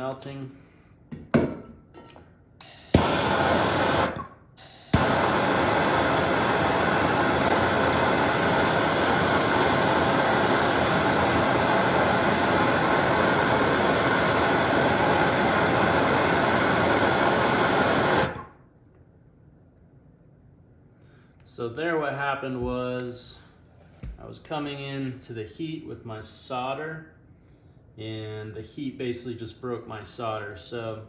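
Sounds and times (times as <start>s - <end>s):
gas torch hissing flame: 2.6s - 18.6s.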